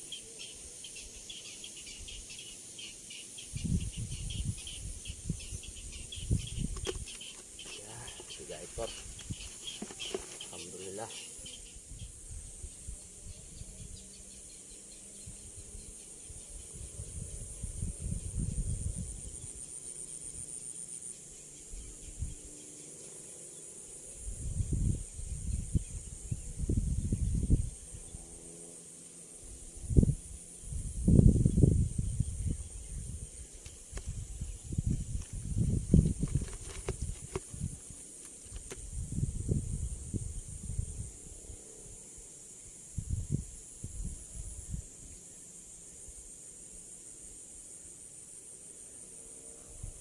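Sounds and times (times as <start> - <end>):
insects chirping: 0.0 - 50.0
handling thumps and rustles: 6.6 - 10.6, 36.0 - 38.8.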